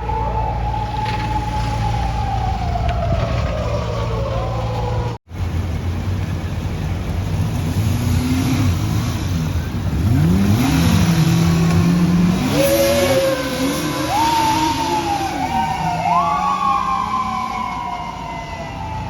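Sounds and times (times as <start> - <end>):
siren wailing: 0.0 - 5.2, 12.4 - 19.0
vehicle engine revving: 7.3 - 14.9.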